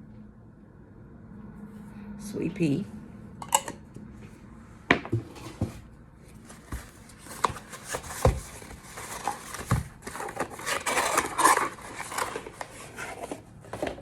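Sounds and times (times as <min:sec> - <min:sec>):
packaging rustling: 0:06.3 - 0:14.0.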